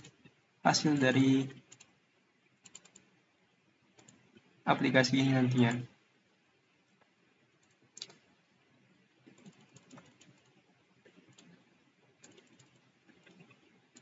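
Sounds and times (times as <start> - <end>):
typing on computer keyboard: 1.5 - 2.0, 2.6 - 3.1, 4.0 - 4.3, 7.6 - 8.3, 9.2 - 14.0.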